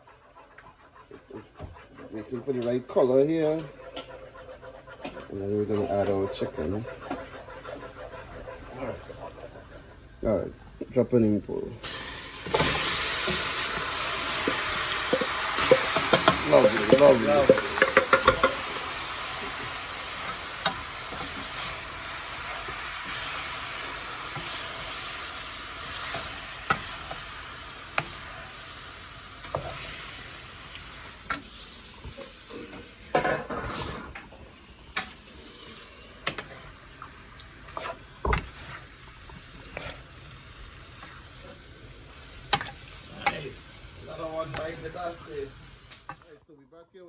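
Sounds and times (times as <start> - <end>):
utensil knocking and scraping pot: 0.0 - 10.0, 12.4 - 46.3
chicken sizzling in a pot: 11.2 - 46.4.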